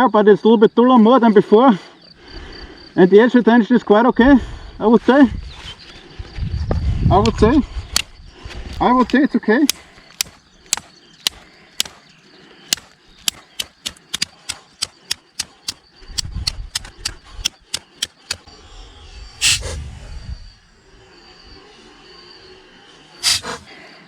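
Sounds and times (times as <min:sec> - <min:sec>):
sharp clicks: 0:07.9 - 0:08.1, 0:09.1 - 0:12.0, 0:12.7 - 0:18.5, 0:23.2 - 0:23.6.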